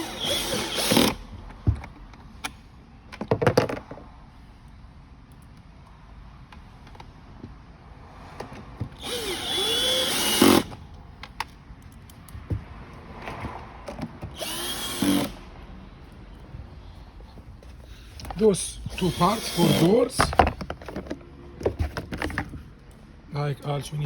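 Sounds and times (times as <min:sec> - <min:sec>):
power drill driving screws: 0:00.0 - 0:01.2, 0:09.0 - 0:10.8, 0:14.3 - 0:15.5, 0:18.9 - 0:20.3
clicks and knocks of parts: 0:05.2 - 0:07.6, 0:10.6 - 0:14.4, 0:20.1 - 0:23.0.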